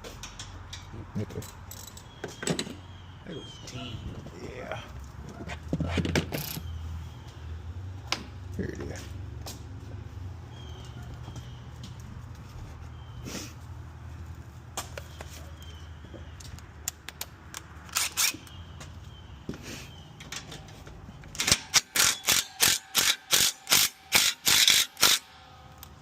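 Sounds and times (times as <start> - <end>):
parts clicking and tapping: 16.4 - 18.9
hand ratchet rasping: 21.4 - 25.2.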